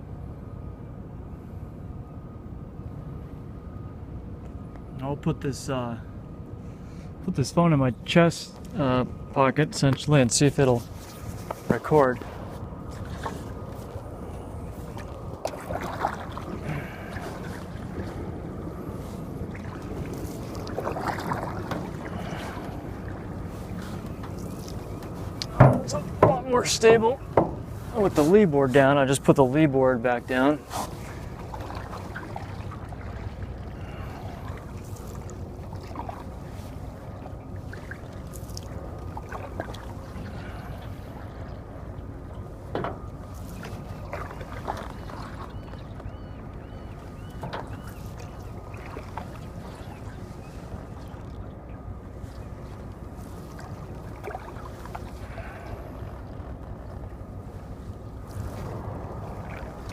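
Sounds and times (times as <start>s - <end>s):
steady low rumble: 0.0s - 59.9s
paddle splashing and knocking: 12.9s - 14.0s, 14.8s - 18.3s, 19.0s - 28.4s, 30.7s - 41.7s, 42.7s - 51.4s, 53.2s - 57.0s, 58.4s - 59.9s
sharp knocks: 27.3s - 27.7s.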